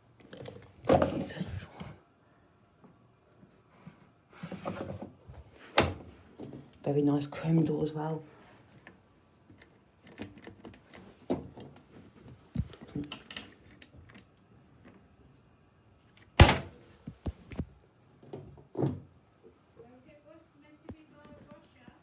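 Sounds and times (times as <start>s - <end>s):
loud door thunk: 16.4s - 16.7s.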